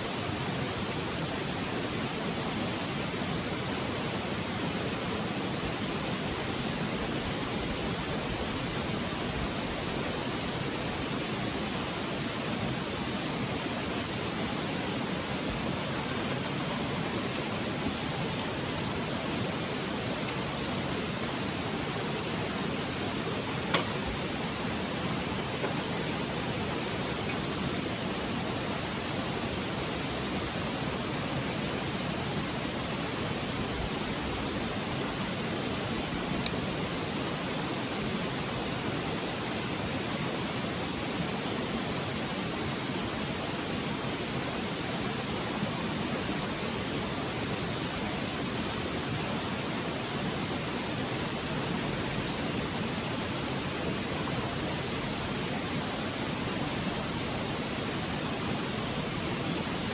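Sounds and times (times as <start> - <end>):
faint click: 23.7 - 24.0, 36.4 - 36.6.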